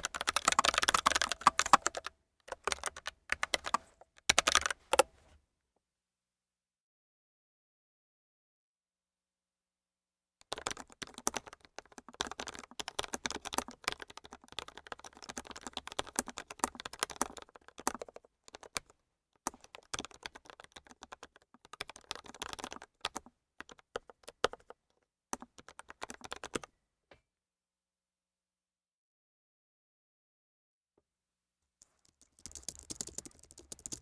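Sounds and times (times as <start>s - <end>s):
typing on mechanical keyboard: 0.0s - 5.1s, 10.4s - 24.8s, 25.4s - 26.7s, 31.8s - 34.0s.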